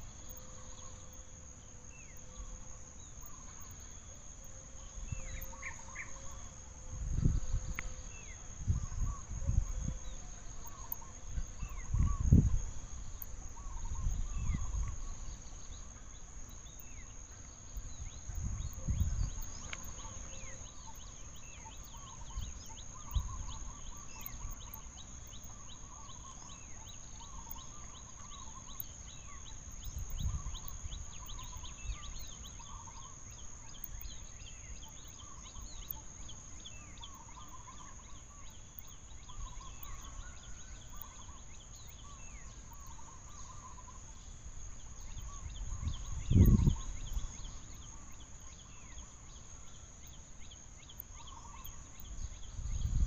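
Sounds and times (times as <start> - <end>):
high-pitched insect drone: 0.0 - 53.0
short chirping calls: 10.6 - 44.2.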